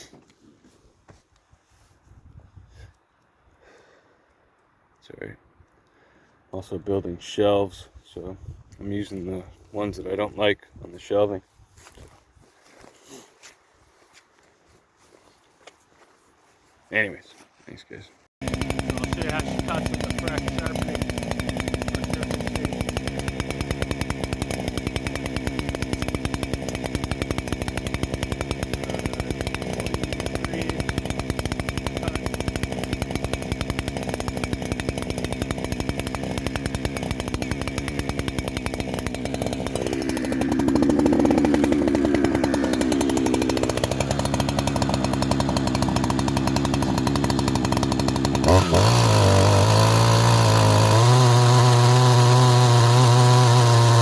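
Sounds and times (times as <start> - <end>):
chainsaw idling and revving: 18.2 - 54.0.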